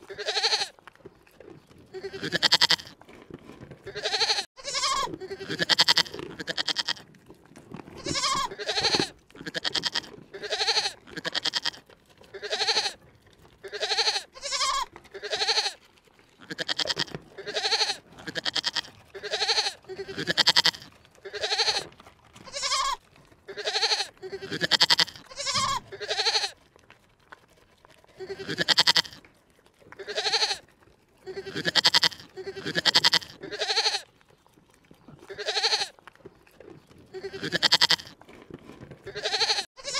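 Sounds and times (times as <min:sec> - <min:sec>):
animal bleating: 0:00.0 - 0:00.8, 0:01.9 - 0:03.0, 0:03.8 - 0:07.1, 0:08.0 - 0:13.0, 0:13.6 - 0:15.8, 0:16.4 - 0:26.6, 0:28.0 - 0:29.3, 0:29.9 - 0:34.2, 0:35.0 - 0:36.0, 0:37.1 - 0:39.9.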